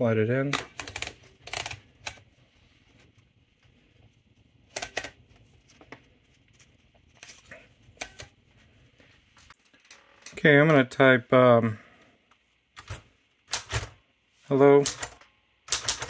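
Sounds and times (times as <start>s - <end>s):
typewriter mechanism clicking: 14.8s - 16.0s.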